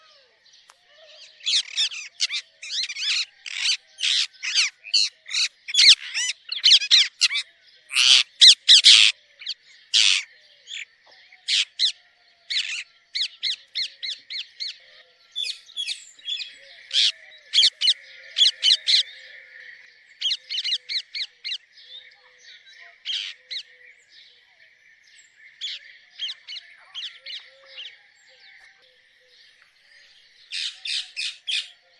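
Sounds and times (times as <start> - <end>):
parrot chirping and squawking: 1.5 - 9.1.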